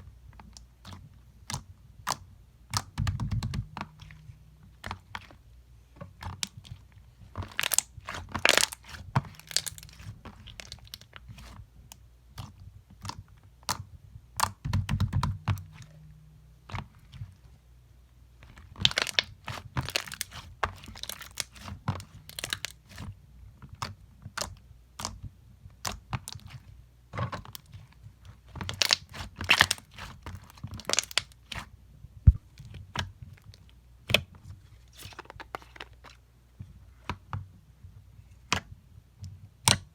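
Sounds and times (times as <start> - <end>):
slime crunching and crackling: 6.2 - 11.6, 18.6 - 23.1, 28.5 - 31.7
muffled thump: 32.3 - 32.5.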